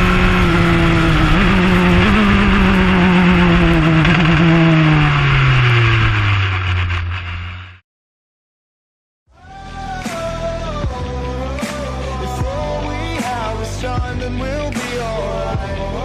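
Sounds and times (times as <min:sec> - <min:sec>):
race car engine revving: 0:00.0 - 0:07.8.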